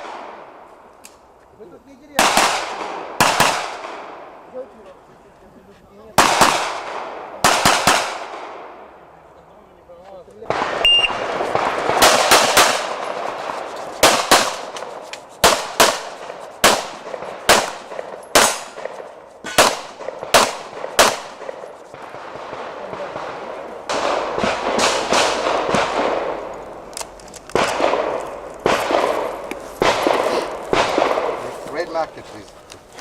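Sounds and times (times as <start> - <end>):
handgun shots: 10.5 - 13.2, 14.0 - 21.7.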